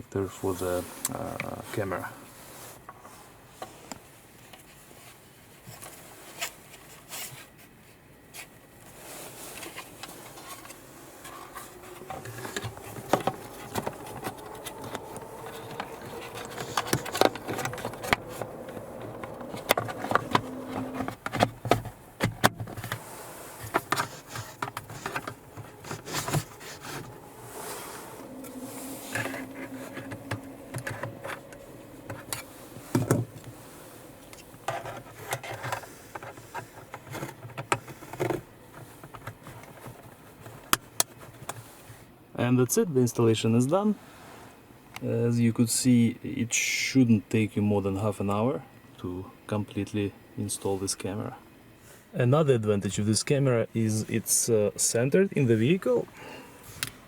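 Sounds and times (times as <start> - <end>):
faint hum rising in pitch: 9.6 - 36.0.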